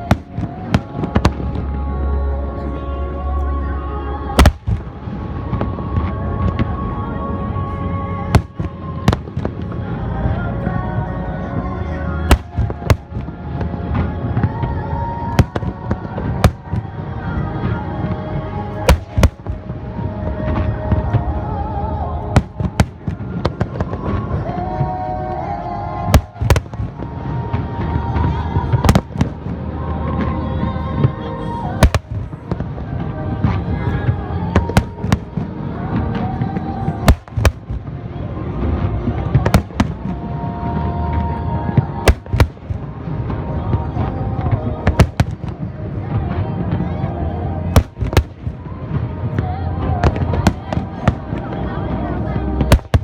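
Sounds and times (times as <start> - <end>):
fireworks bursting in sharp bangs: 0.0 - 1.4, 4.4 - 5.1, 8.4 - 9.7, 12.3 - 13.3, 15.3 - 15.8, 16.4 - 16.8, 18.9 - 19.7, 22.4 - 24.1, 26.1 - 27.0, 28.8 - 29.4, 31.8 - 32.7, 34.6 - 35.4, 37.1 - 37.9, 39.4 - 40.0, 42.0 - 42.9, 44.9 - 45.7, 47.8 - 48.7, 50.0 - 51.5, 52.7 - 53.0
dense low rumble: 0.0 - 24.7, 26.1 - 53.0
music playing: 0.0 - 53.0.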